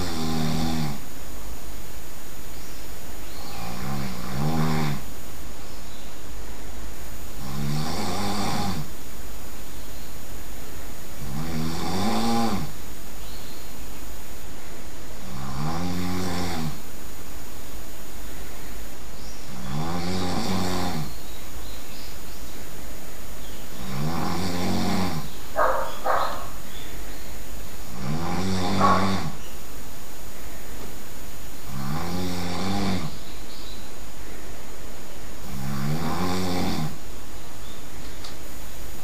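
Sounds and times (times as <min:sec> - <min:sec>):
person snoring loudly: 0:00.0 - 0:01.1, 0:03.4 - 0:05.1, 0:07.4 - 0:08.9, 0:11.2 - 0:12.8, 0:15.2 - 0:16.8, 0:19.5 - 0:21.2, 0:23.8 - 0:26.2, 0:27.8 - 0:29.4, 0:31.6 - 0:33.2, 0:35.4 - 0:37.0.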